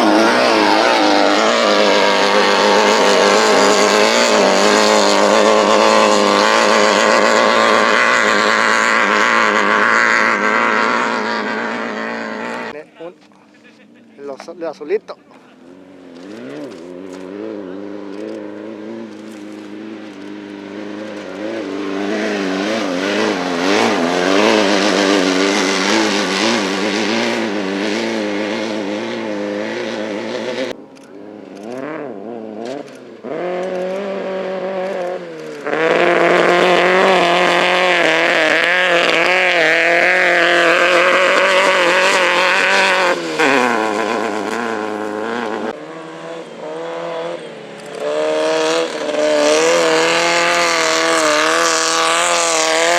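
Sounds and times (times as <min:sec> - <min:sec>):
race car engines revving high: 0:00.0 - 0:12.8, 0:15.1 - 0:52.9.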